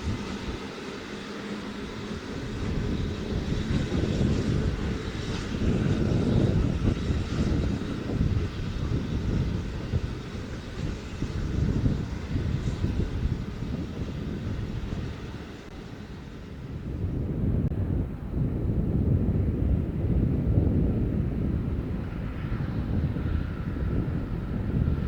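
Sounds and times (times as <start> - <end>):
steam train rumbling: 0.0 - 18.3.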